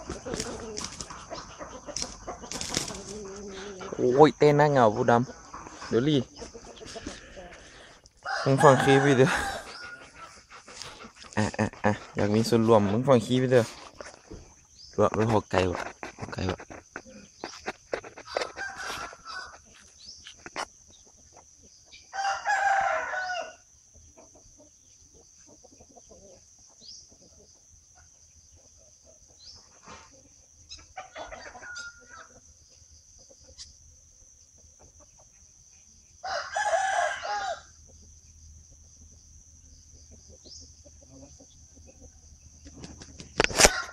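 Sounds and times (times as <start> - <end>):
rooster crowing: 7.0 - 10.5, 18.2 - 19.7, 22.1 - 23.7, 31.0 - 32.4, 36.2 - 37.8, 43.5 - 43.9.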